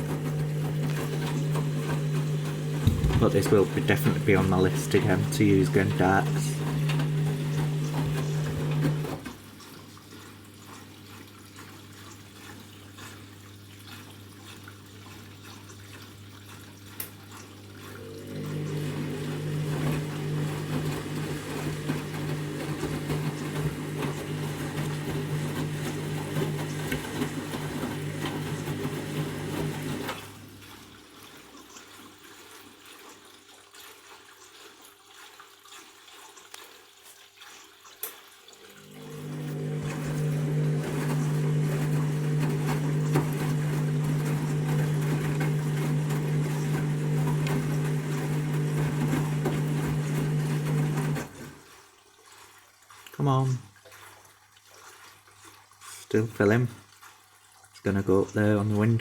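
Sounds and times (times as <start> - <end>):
water rushing: 0.0 - 9.4, 17.9 - 31.0, 38.4 - 51.6
washing machine hum: 0.0 - 33.4, 38.5 - 54.1.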